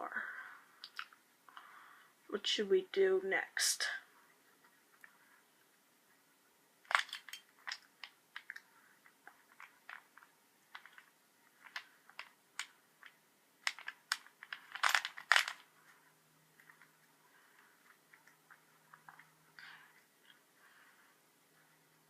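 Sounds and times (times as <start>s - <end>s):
rubik's cube clicking as twisted: 9.2s - 15.7s.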